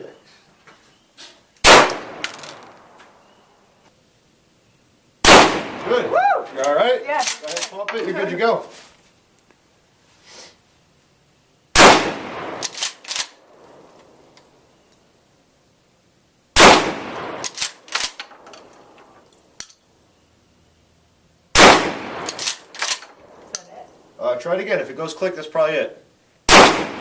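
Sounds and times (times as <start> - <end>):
gunshots: 1.6 - 2.8, 5.2 - 6.1, 11.8 - 13.4, 16.6 - 17.8, 21.5 - 23.4, 26.5 - 27.0.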